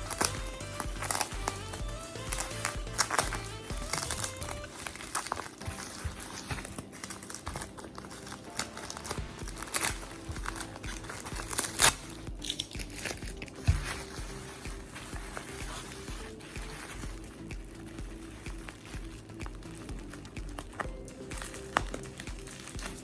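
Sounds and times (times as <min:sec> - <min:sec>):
background music: 0:00.0 - 0:23.0
packaging crinkling: 0:01.0 - 0:18.9.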